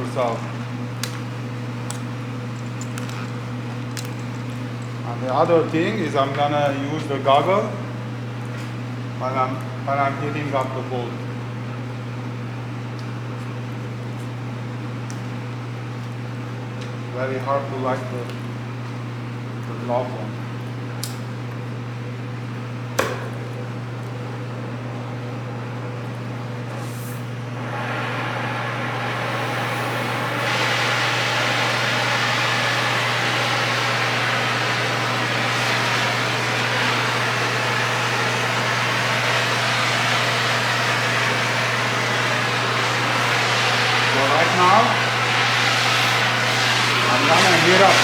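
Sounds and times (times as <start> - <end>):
gas torch flame hissing: 27.6 - 48.0.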